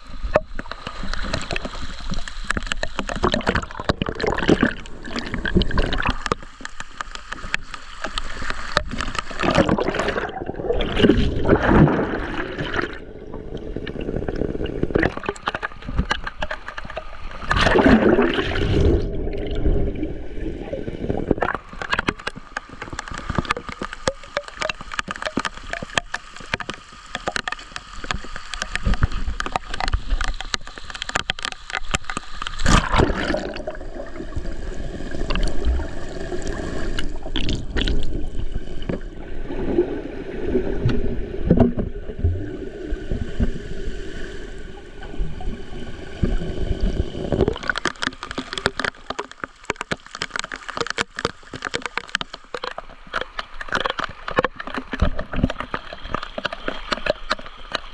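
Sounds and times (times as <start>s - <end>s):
dull gurgling: 0.0s - 6.5s, 8.8s - 26.5s
water splashing: 0.0s - 57.9s.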